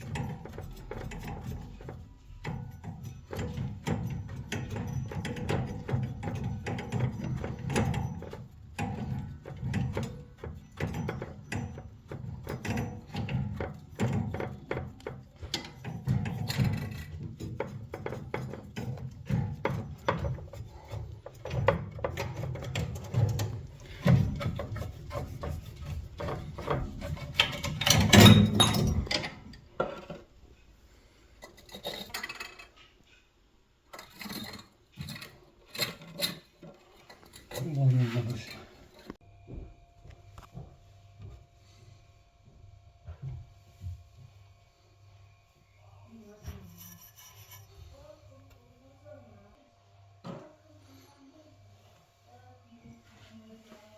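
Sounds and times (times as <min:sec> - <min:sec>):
scraping and handling sounds: 0:00.0 - 0:39.2, 0:46.0 - 0:48.6.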